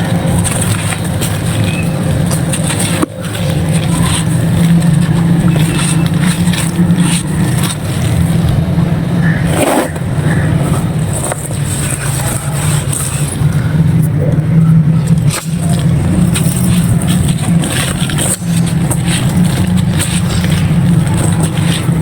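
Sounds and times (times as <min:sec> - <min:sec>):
dry clay crunching by hand: 0:00.0 - 0:22.0
low hum: 0:00.0 - 0:22.0.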